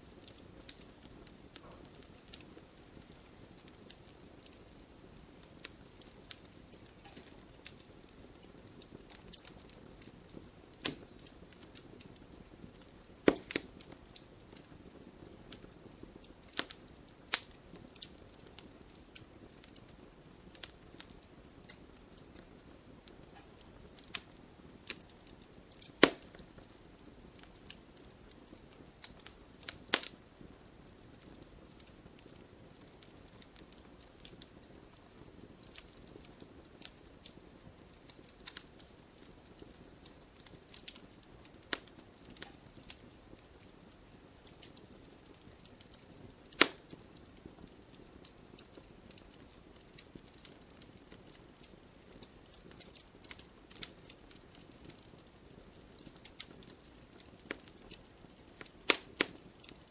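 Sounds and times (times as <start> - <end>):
wood fire crackling and popping: 0.0 - 59.9.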